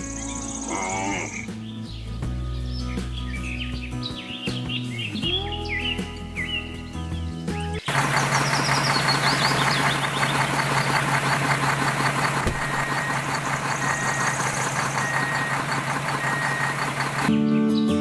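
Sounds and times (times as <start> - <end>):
vehicle engine humming: 7.8 - 17.4.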